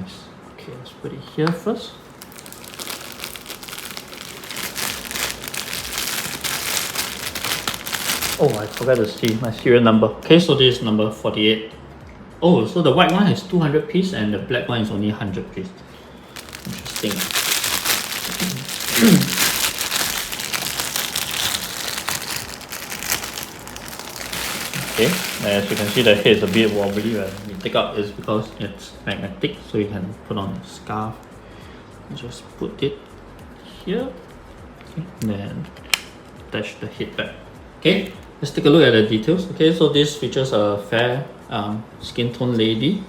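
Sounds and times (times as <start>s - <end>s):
packaging crinkling and rustling: 2.0s - 9.7s, 16.3s - 28.4s.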